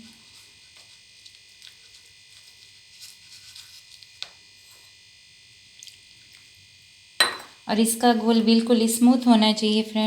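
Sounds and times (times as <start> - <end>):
spoon tapping bowl: 7.2 - 7.6.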